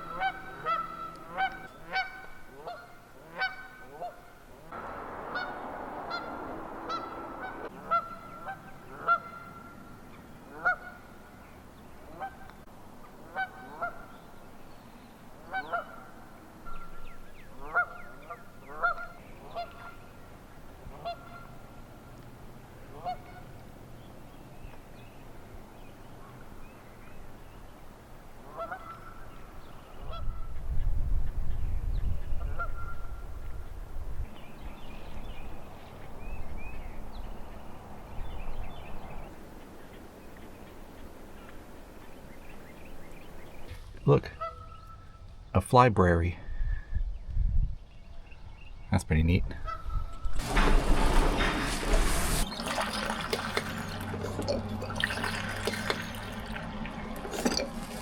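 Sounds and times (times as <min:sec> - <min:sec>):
geese honking: 0:00.0 - 0:11.2, 0:13.3 - 0:14.1, 0:15.4 - 0:16.9, 0:17.5 - 0:20.0, 0:20.9 - 0:21.6, 0:22.9 - 0:23.5, 0:28.5 - 0:29.3, 0:44.3 - 0:45.2
loud low rumble: 0:04.7 - 0:08.6.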